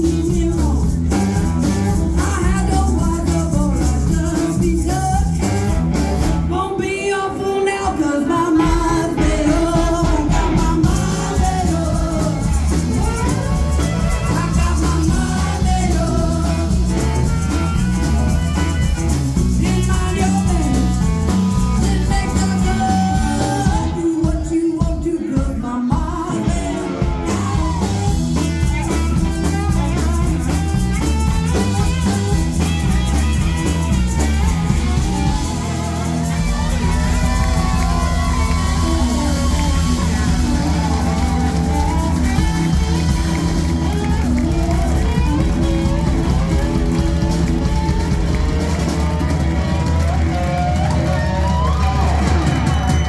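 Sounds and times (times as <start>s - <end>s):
woman singing: 0.0s - 5.8s, 6.4s - 17.9s, 19.4s - 30.8s
rhythm and blues band playing: 0.0s - 53.0s.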